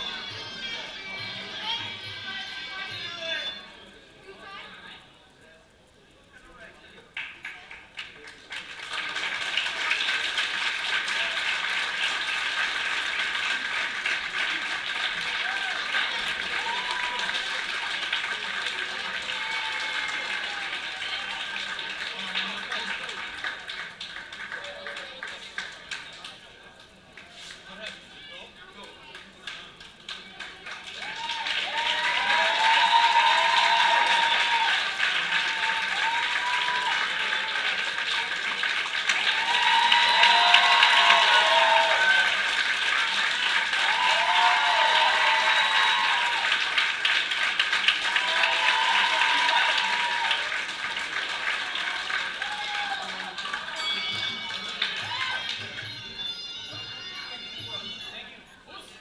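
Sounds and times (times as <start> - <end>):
crowd shouting and cheering: 0.0 - 3.7, 15.0 - 21.9, 31.0 - 58.2
crowd applauding: 7.2 - 28.0, 28.8 - 58.2.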